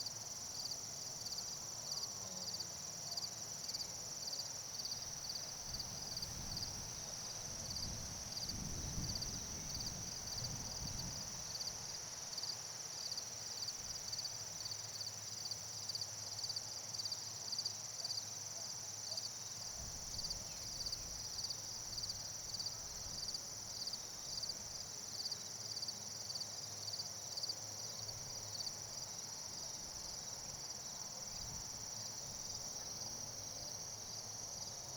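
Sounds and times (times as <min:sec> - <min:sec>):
crickets trilling: 0:00.1 - 0:18.5, 0:19.1 - 0:34.9.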